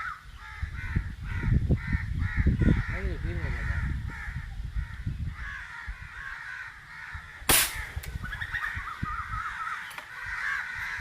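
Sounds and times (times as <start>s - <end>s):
birds chattering: 0.0s - 11.0s
pellet gun crack: 7.5s - 8.2s.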